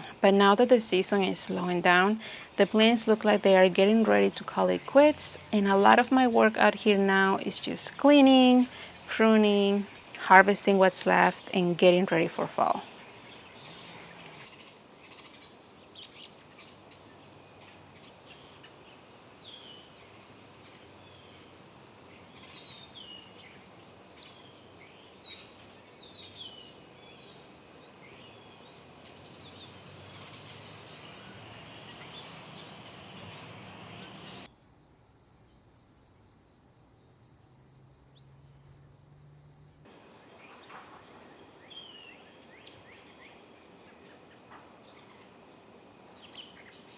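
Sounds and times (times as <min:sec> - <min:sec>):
insects trilling: 0:00.0 - 0:34.5, 0:39.9 - 0:46.9
bird chirps: 0:28.0 - 0:34.5.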